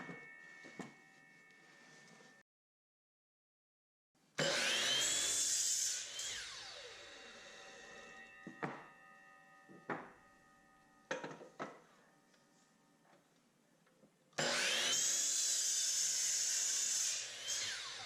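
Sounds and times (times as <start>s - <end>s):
miter saw cutting wood: 4.4s - 8.3s, 14.4s - 18.0s
saw blade winding down: 4.4s - 8.5s, 14.4s - 18.0s.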